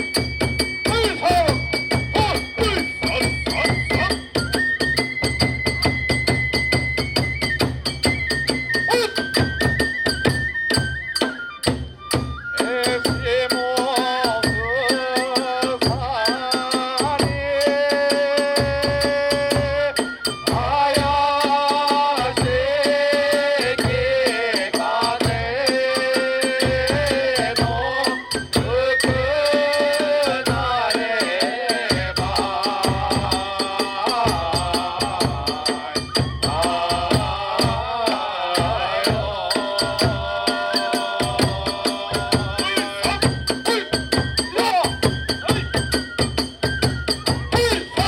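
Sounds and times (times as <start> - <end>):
large drum beat: 0.0 - 11.0, 15.6 - 48.0
bamboo flute melody: 0.0 - 48.0.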